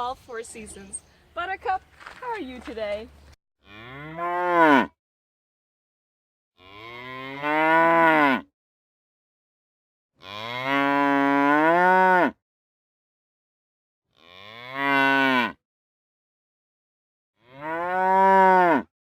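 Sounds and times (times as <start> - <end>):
cow mooing: 3.6 - 5.0, 6.6 - 8.5, 10.2 - 12.4, 14.2 - 15.6, 17.4 - 18.9.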